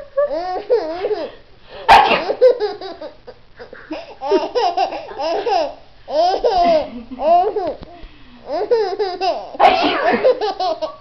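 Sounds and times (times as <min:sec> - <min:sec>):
baby laughing: 0:00.0 - 0:07.9, 0:08.5 - 0:11.0
fake sneeze: 0:01.9 - 0:02.3, 0:09.6 - 0:10.2.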